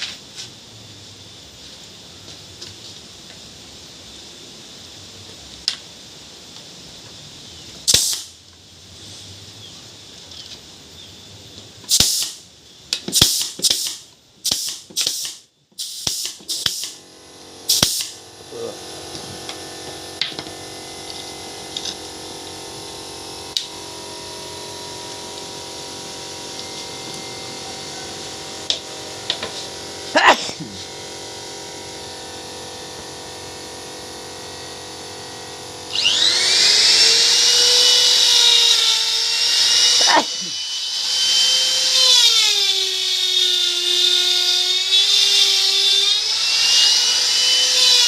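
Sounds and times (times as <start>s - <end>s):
pneumatic nail gun firing: 7.8s - 8.4s, 11.9s - 18.3s, 35.8s - 48.0s
machine hum: 17.0s - 48.0s.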